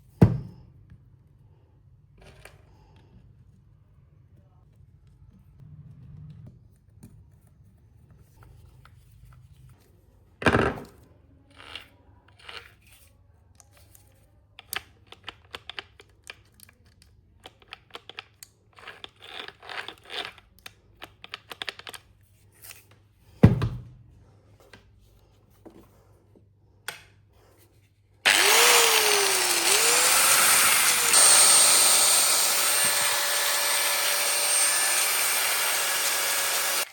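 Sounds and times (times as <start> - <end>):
angle grinder whining: 28.2 - 36.9.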